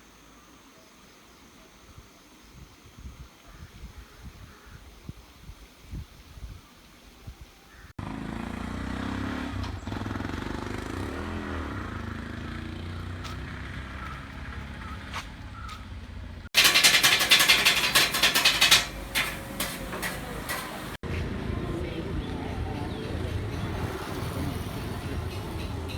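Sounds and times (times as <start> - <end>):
vehicle engine running: 8.0 - 25.9
loud rapid rattling clatter: 16.6 - 21.0.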